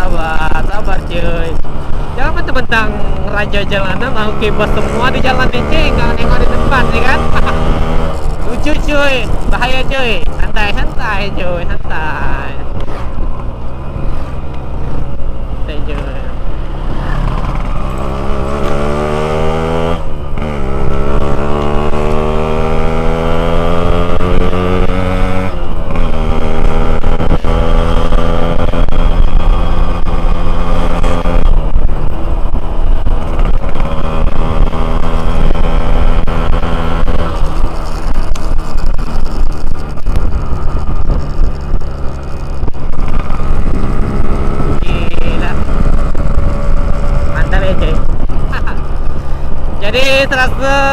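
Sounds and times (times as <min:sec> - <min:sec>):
motorcycle engine accelerating: 0:00.0 - 0:50.9.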